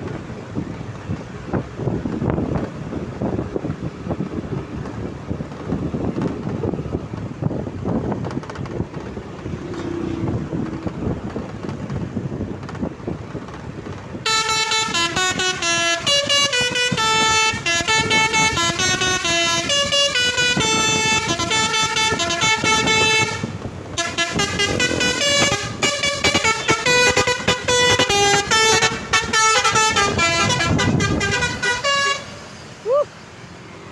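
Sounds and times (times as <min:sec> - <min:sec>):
vehicle and street noise: 0:00.0 - 0:33.9
bus air horns playing tune: 0:14.2 - 0:32.8.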